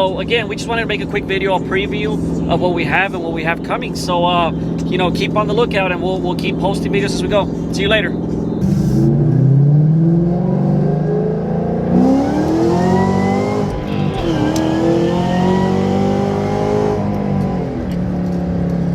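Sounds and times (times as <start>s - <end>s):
car engine accelerating: 0.0s - 18.9s.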